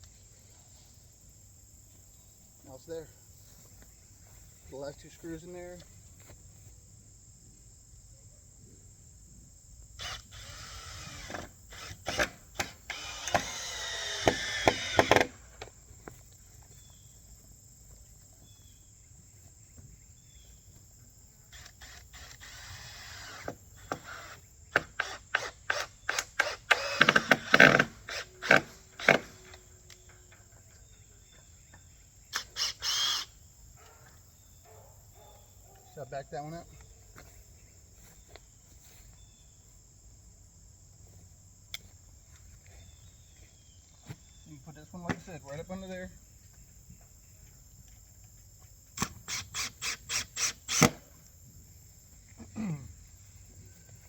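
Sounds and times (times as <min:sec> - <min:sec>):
crickets chirping: 0:00.0 - 0:54.0
power drill driving screws into wood: 0:10.0 - 0:15.7, 0:21.5 - 0:30.0, 0:32.3 - 0:33.4, 0:49.0 - 0:51.2.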